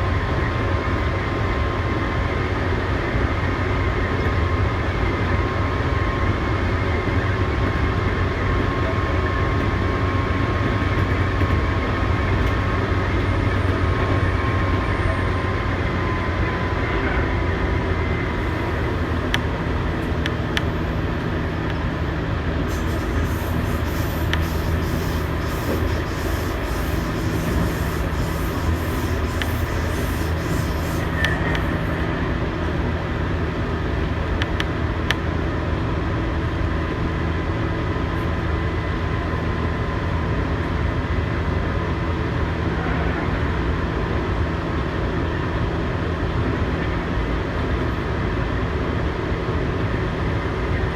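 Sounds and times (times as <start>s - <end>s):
train wheels rumbling on rail: 0.0s - 50.9s
track clicks: 18.4s - 21.8s, 22.7s - 34.7s
motor and gear whine: 22.7s - 34.6s.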